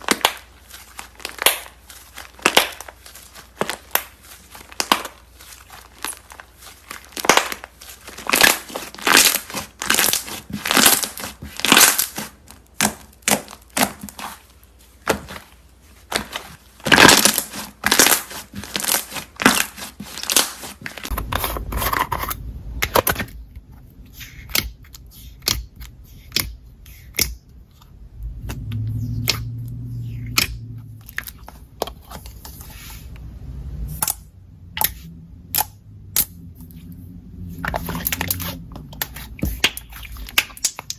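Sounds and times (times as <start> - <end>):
slime crackling and popping: 0.0 - 21.2, 34.8 - 36.8, 37.6 - 40.9
low hum: 27.4 - 31.9.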